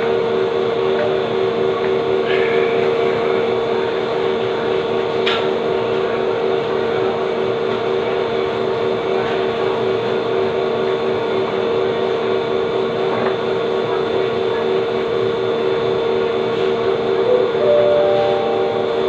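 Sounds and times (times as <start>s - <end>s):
steady machine hum: 17.0s - 19.0s.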